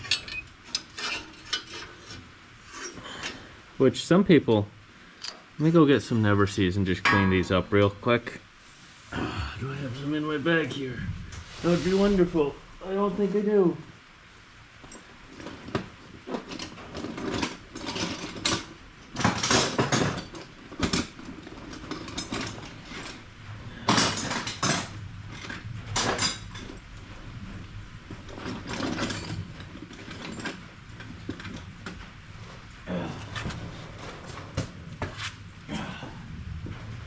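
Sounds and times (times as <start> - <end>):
metal tools clinking in a bag: 0.0 - 1.9.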